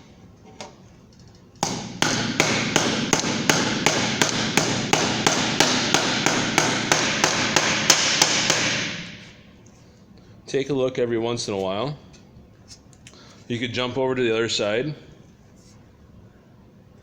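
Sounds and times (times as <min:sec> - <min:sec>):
hammer on sheet metal: 0:01.6 - 0:09.3.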